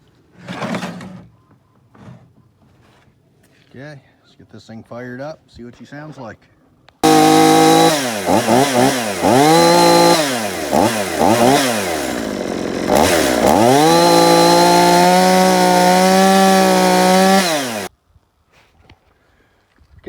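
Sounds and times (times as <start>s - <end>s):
chainsaw engine revving: 7.0s - 17.9s.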